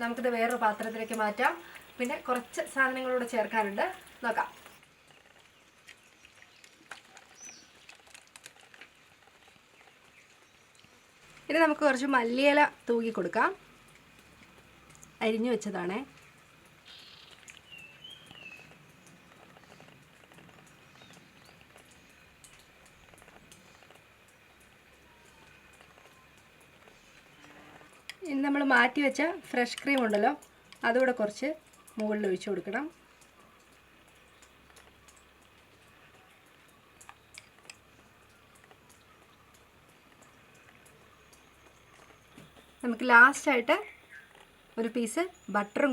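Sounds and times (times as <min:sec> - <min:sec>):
light ticks and soft rustle: 0:00.0 - 0:45.9
faint high chirps: 0:24.6 - 0:27.7.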